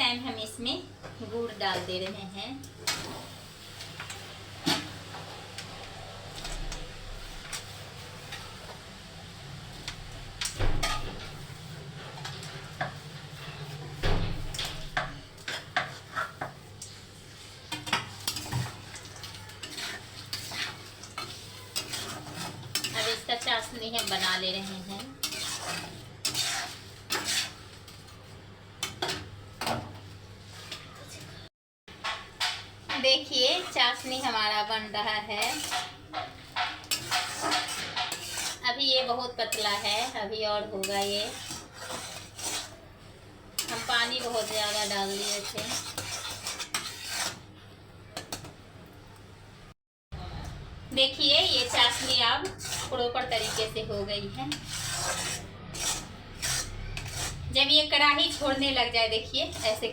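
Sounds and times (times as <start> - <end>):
spoon stirring and scraping pan: 0.1 - 49.2, 50.5 - 59.9.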